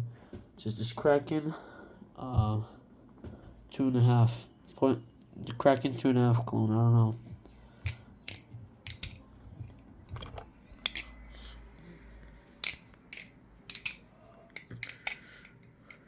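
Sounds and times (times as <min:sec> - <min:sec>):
butterfly knife clicking: 0:12.6 - 0:14.0, 0:14.6 - 0:16.0.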